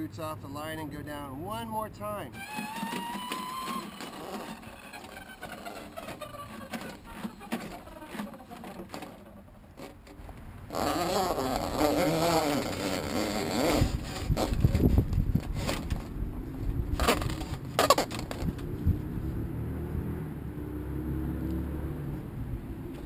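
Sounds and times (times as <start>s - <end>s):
drain cleaning machine motor: 2.4s - 9.9s
cable scraping in drain: 2.4s - 16.1s, 17.0s - 18.6s.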